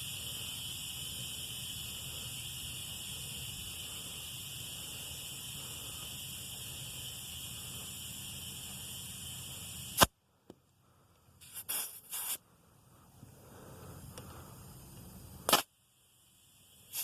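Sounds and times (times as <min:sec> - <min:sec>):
hissing: 0:00.0 - 0:10.1, 0:11.4 - 0:12.4, 0:16.6 - 0:17.0
sharp click: 0:15.5 - 0:15.7.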